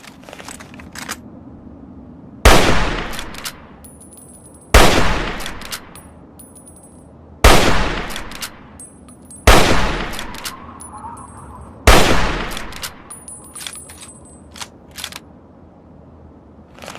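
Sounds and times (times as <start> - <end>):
rifle shots with echo: 2.5 - 3.6, 4.8 - 5.9, 7.4 - 8.6, 9.5 - 10.6, 11.9 - 13.1.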